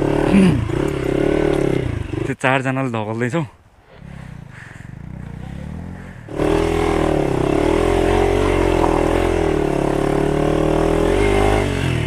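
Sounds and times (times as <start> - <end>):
motorcycle engine revving hard: 0.0 - 2.4, 4.0 - 12.0.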